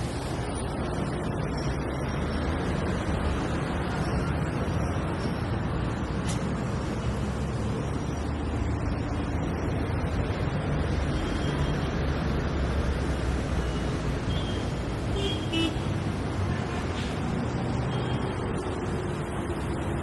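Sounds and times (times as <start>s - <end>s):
road traffic rumble: 0.0s - 20.0s.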